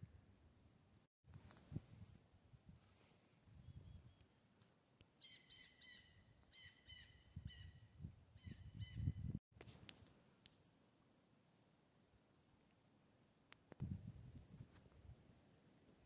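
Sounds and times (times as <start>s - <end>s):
faint wild bird calls: 2.9s - 9.2s.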